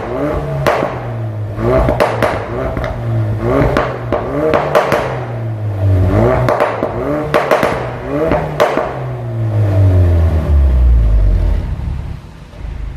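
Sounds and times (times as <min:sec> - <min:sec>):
exhaust pops and crackles: 0:00.0 - 0:05.4, 0:06.2 - 0:09.1
car engine revving: 0:00.0 - 0:12.9.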